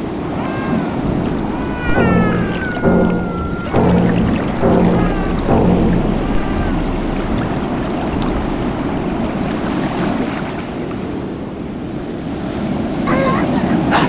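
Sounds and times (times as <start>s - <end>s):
ocean waves: 0.0s - 14.0s
wind at sea: 0.0s - 14.0s.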